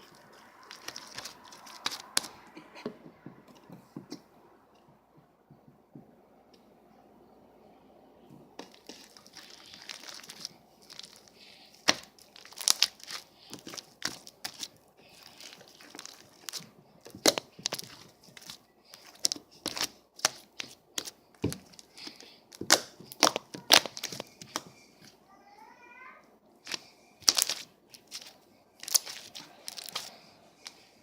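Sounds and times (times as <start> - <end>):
slime crinkling: 0.0 - 2.6, 8.6 - 25.2, 26.6 - 30.9
slime popping and clicking: 22.5 - 24.6.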